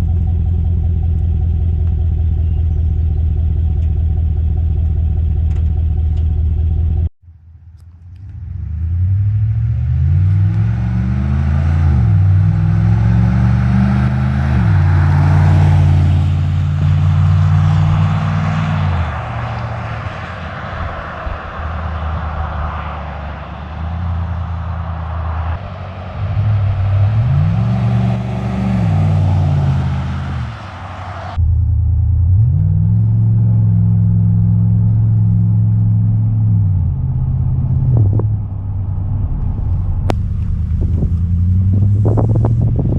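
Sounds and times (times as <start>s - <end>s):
truck engine idling: 0.0s - 8.3s
truck accelerating through gear shifts: 8.1s - 20.2s, 25.6s - 30.8s, 32.3s - 42.9s.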